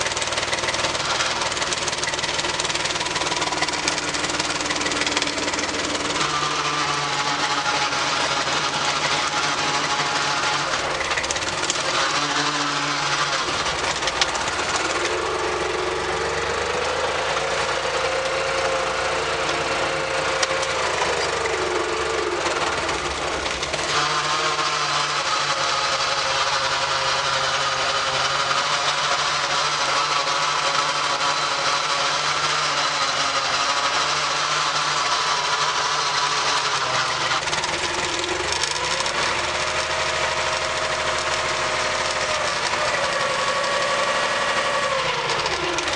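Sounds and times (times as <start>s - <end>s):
tractor diesel engine running: 0.0s - 45.9s.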